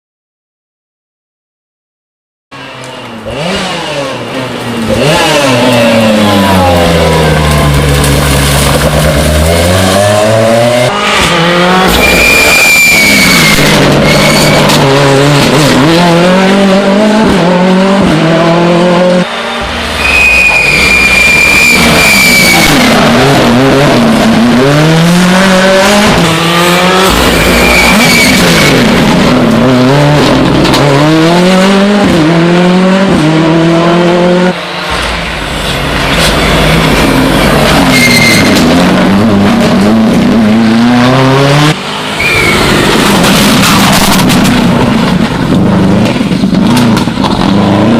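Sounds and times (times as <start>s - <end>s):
rally car engines revving: 2.6s - 47.9s
tyres squealing: 11.9s - 14.8s, 20.0s - 22.9s, 27.1s - 28.8s.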